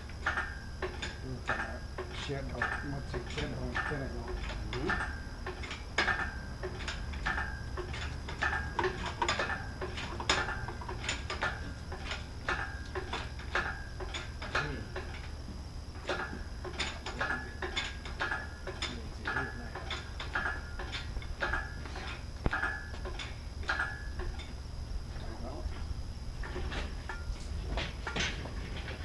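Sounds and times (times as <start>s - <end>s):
short metallic rings: 0.0s - 24.7s
metal tools clinking and clattering: 26.4s - 29.0s.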